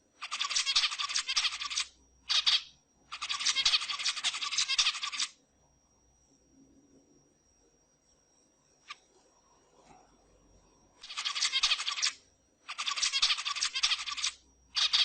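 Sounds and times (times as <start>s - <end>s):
finch song chattering: 0.2s - 5.3s, 11.0s - 15.0s.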